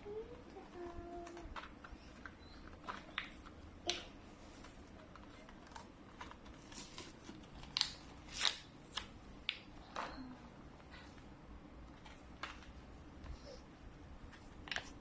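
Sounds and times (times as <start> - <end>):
plastic toys clicking: 0.7 - 4.1.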